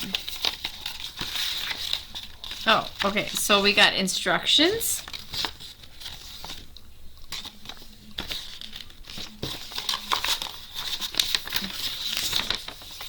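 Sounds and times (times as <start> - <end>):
packaging crinkling: 0.0 - 4.0, 5.0 - 13.0.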